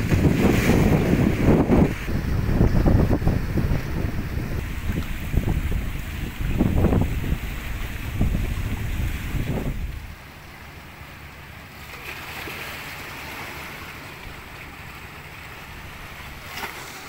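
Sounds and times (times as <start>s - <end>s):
wind buffeting microphone: 0.0s - 10.2s
sea: 0.0s - 17.0s.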